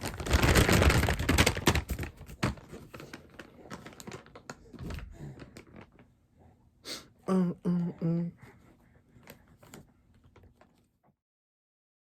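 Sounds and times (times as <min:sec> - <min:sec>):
diaper rustling and clicking: 0:00.0 - 0:06.1.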